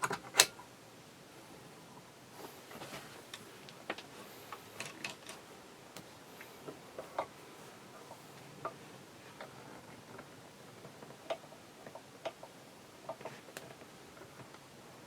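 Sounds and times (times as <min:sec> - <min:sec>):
small hard parts clicking: 0:03.3 - 0:05.4.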